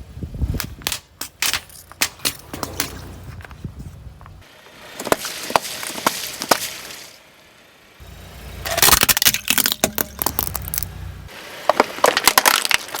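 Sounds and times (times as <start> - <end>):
car low hum: 0.0 - 13.0
tyre crushing crunchy objects: 8.7 - 10.9, 11.6 - 13.0.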